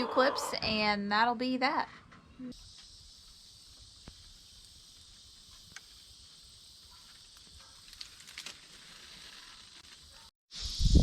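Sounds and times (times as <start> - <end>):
insects droning: 2.4 - 10.9.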